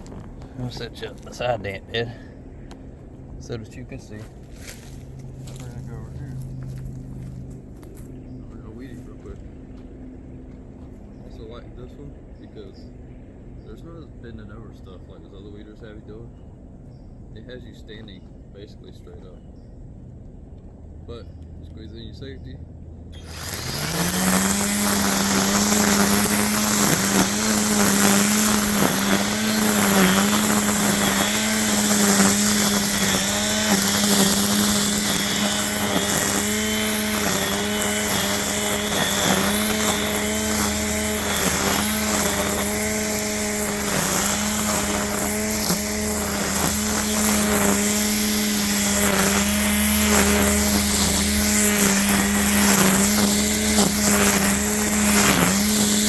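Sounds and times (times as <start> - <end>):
string trimmer whining: 0.0 - 12.2, 23.1 - 56.0.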